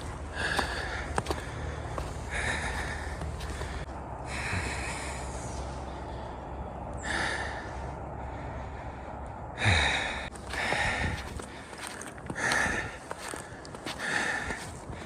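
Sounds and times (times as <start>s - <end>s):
heavy breathing: 0.0s - 5.2s, 9.6s - 15.0s.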